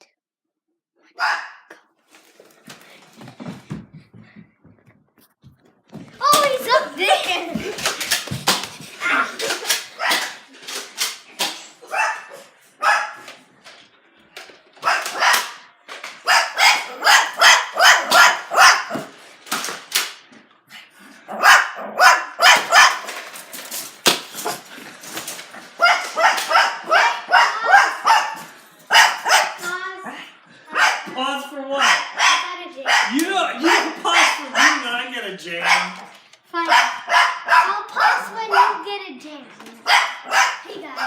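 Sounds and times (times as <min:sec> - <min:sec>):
dog barking rapidly: 0:01.2 - 0:01.6, 0:10.0 - 0:10.4, 0:11.8 - 0:13.2, 0:14.8 - 0:15.6, 0:16.2 - 0:19.1, 0:21.3 - 0:23.0, 0:25.8 - 0:29.8, 0:30.7 - 0:31.2, 0:31.8 - 0:34.9, 0:35.6 - 0:38.8, 0:39.8 - 0:41.0.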